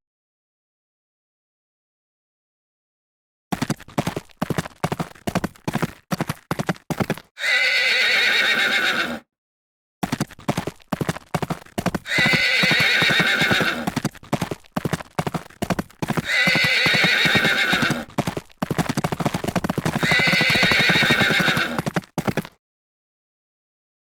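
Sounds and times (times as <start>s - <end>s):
hoof clip-clops: 3.5s - 9.2s, 10.0s - 22.6s
horse whinnying: 7.4s - 9.2s, 12.1s - 14.0s, 16.1s - 18.1s, 19.9s - 21.9s.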